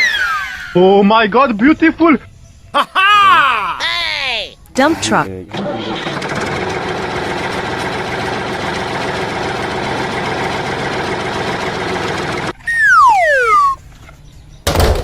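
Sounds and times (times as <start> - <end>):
high whistle sliding down: 12.6 - 13.8.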